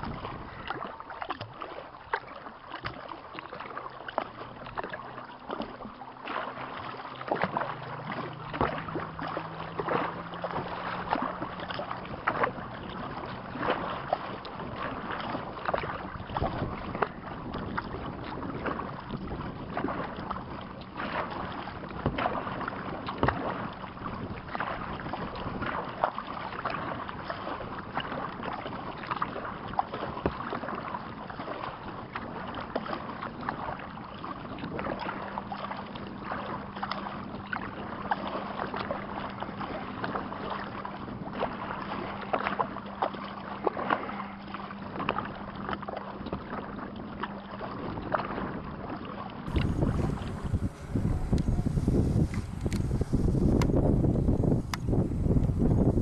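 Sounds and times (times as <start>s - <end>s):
water splashing and dripping: 0.0s - 16.2s
paddle strokes against hull: 0.0s - 56.0s.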